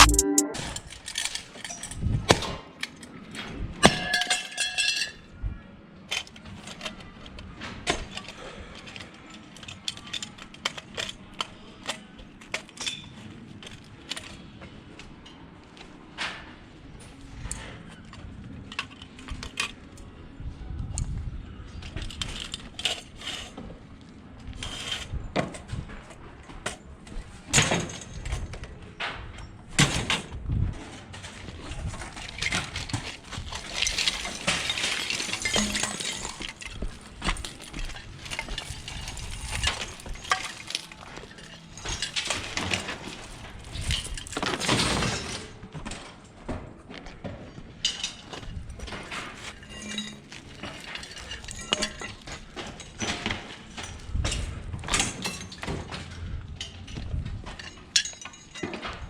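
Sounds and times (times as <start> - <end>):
metal rattling clatter: 31.2 - 46.1, 47.8 - 59.0
scrap metal clanking: 31.8 - 45.3.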